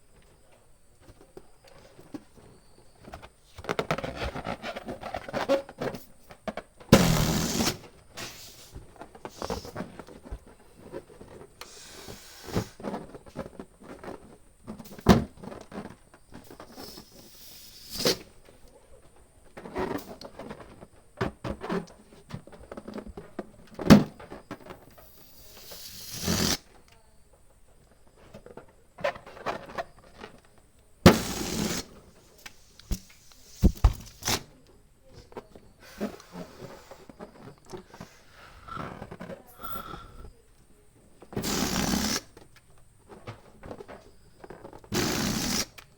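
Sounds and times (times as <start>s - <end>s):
balloon taps and rubbing: 6.9s - 8.7s, 25.4s - 26.6s, 31.1s - 32.0s, 32.9s - 34.4s, 41.4s - 42.3s, 44.6s - 45.8s
hand pump rushing air: 7.0s - 9.8s, 11.6s - 12.8s, 16.7s - 18.2s, 25.0s - 26.6s, 31.1s - 32.0s, 37.8s - 40.3s, 41.4s - 42.4s, 44.9s - 45.8s.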